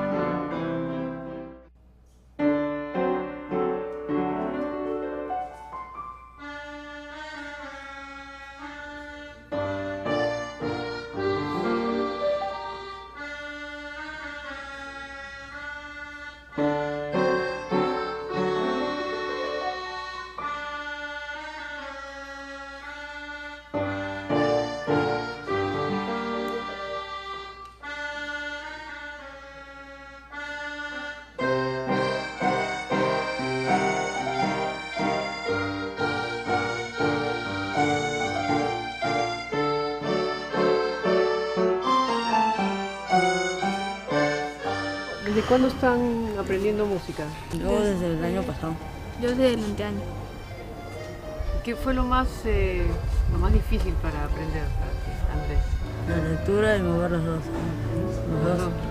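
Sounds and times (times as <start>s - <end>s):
instrumental music with held chords: 2.4s - 58.9s.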